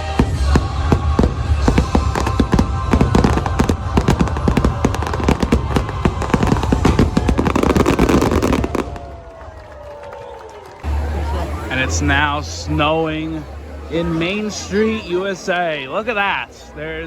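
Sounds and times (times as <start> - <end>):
music playing: 0.0 - 8.8, 10.8 - 15.3
fireworks barrage: 0.0 - 9.6.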